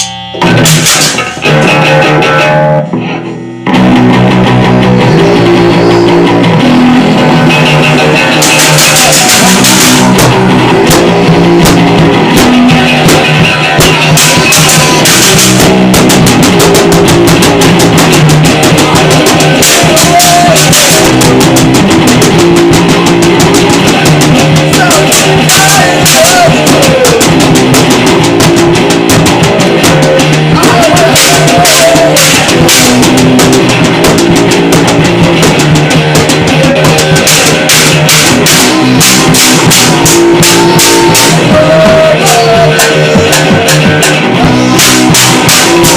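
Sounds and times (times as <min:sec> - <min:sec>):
fuzzy electric guitar: 0:00.0 - 0:45.9
garage punk band playing: 0:00.0 - 0:45.9
pounding drum kit: 0:00.0 - 0:45.9
wavering voice singing: 0:24.0 - 0:27.4, 0:29.8 - 0:32.6, 0:40.6 - 0:44.7.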